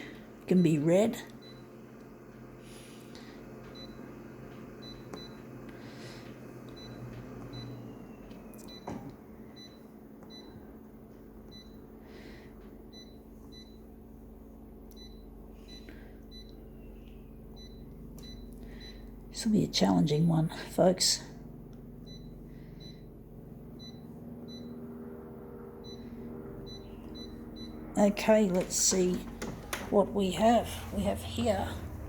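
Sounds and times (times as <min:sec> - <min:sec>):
photocopier humming: 0:00.0 - 0:19.5, 0:20.1 - 0:32.0.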